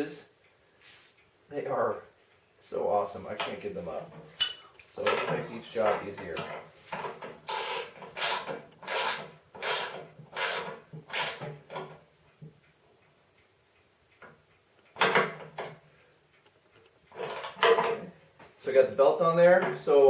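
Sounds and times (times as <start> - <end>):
ratchet wrench rasping: 7.5 - 11.5.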